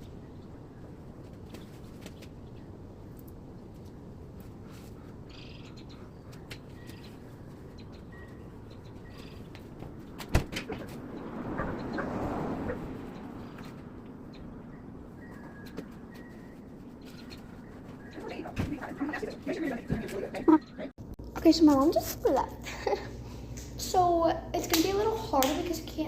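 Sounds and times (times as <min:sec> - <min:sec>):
low background hum: 0:00.0 - 0:26.0
faint bird chirps: 0:05.3 - 0:09.6.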